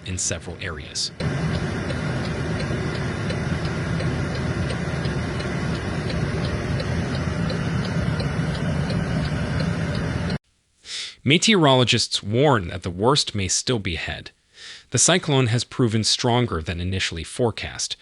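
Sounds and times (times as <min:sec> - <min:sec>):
vehicle engine rumble: 0:00.6 - 0:10.4
light even ticking: 0:01.1 - 0:10.4.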